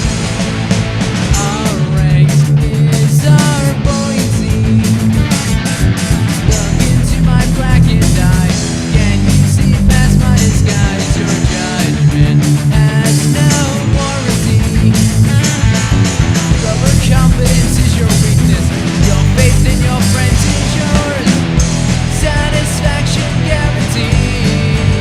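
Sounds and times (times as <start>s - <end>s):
bass guitar: 0.0s - 25.0s
drums: 0.0s - 25.0s
electric guitar: 0.0s - 25.0s.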